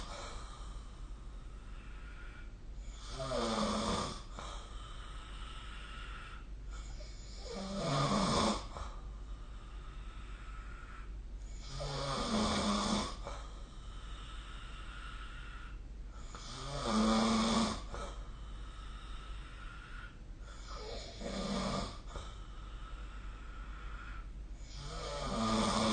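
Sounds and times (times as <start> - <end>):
person snoring: 1.8 - 4.7, 5.5 - 8.9, 10.0 - 13.4, 14.0 - 18.1, 19.0 - 22.4, 23.0 - 25.9.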